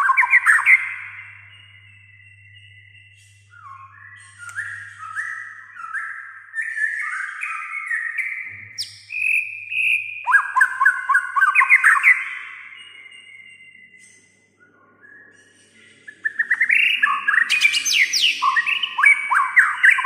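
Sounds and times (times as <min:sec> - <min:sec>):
songbird whistling: 0:00.0 - 0:20.0.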